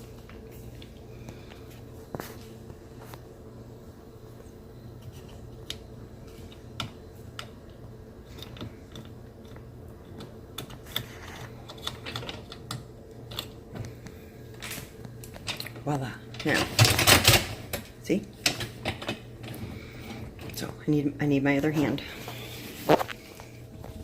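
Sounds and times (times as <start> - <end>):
steady low hum: 0.0 - 24.0
plastic parts clicking and rattling: 8.3 - 13.9, 14.6 - 19.6.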